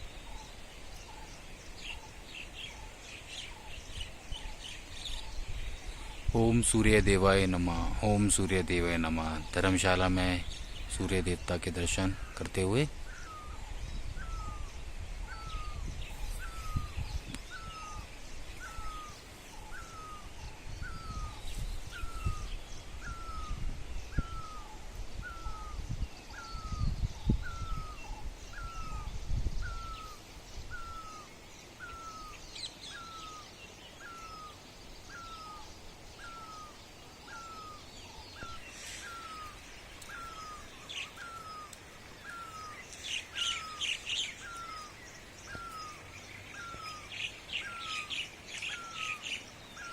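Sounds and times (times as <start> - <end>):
birds chirping: 0.0 - 49.9.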